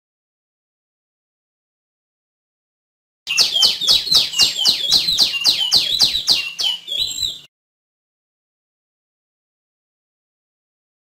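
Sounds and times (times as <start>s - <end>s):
songbird calling sharp notes: 3.3s - 7.5s.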